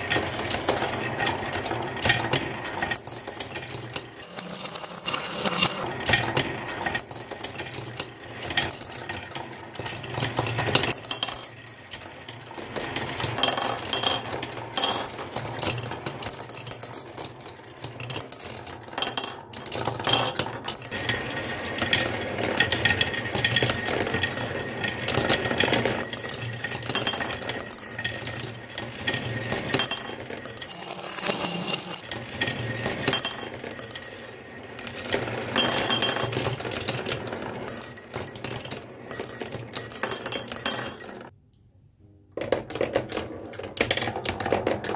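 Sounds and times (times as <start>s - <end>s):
marbles rolling on wooden track: 0.0s - 41.4s, 42.4s - 44.9s
marbles clicking and knocking: 1.8s - 6.3s, 21.7s - 41.3s
marbles ringing clinks: 29.8s - 32.0s.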